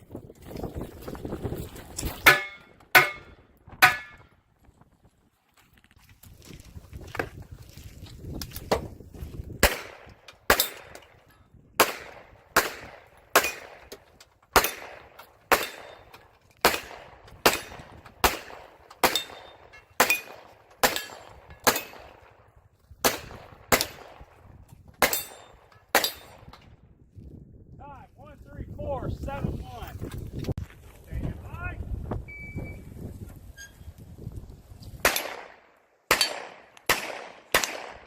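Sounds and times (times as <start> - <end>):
pistol shots: 9.6 - 11.0, 11.8 - 22.3, 23.0 - 24.4, 25.0 - 26.5, 35.0 - 38.0.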